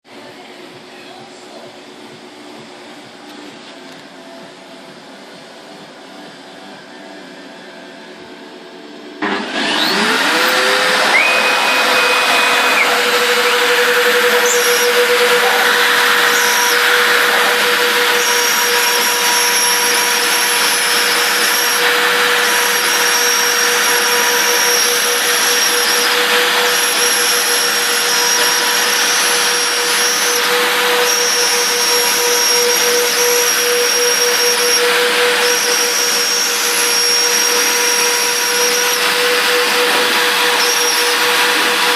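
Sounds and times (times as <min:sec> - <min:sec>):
router spindles whining: 0:09.2 - 0:41.9
higher-pitched tones: 0:09.9 - 0:41.9.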